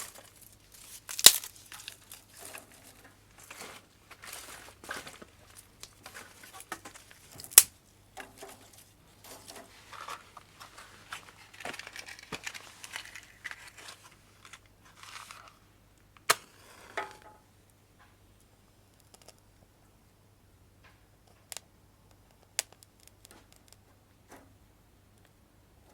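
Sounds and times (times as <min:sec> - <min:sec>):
hands rustling and crinkling: 0:00.0 - 0:16.4.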